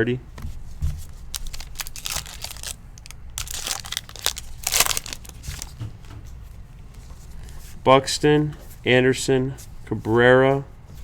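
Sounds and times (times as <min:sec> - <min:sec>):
card pack wrapper crinkling: 0:01.3 - 0:05.8.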